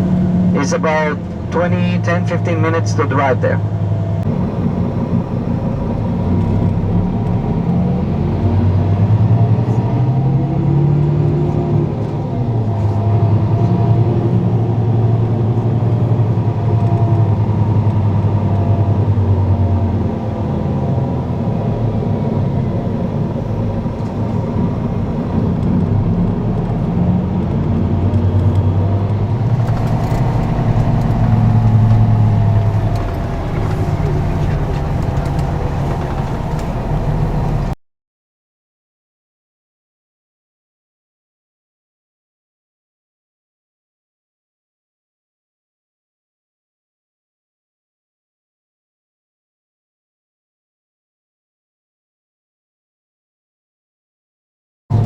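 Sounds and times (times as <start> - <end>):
bus engine hum: 0.0 - 37.8
road noise: 0.0 - 37.8.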